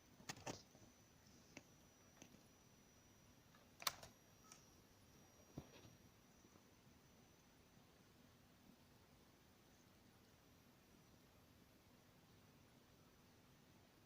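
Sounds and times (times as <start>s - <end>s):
faint high-pitched whine: 0.0s - 14.0s.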